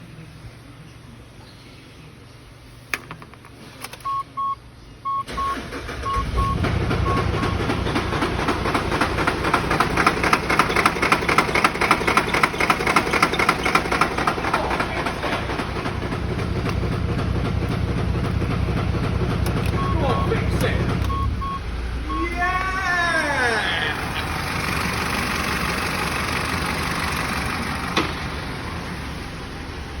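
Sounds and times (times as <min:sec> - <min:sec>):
diesel engine starting and idling: 0:03.6 - 0:30.0
short electronic beeps: 0:04.0 - 0:07.6, 0:19.7 - 0:22.4
man talking: 0:14.4 - 0:15.8, 0:19.8 - 0:21.1, 0:22.0 - 0:24.2.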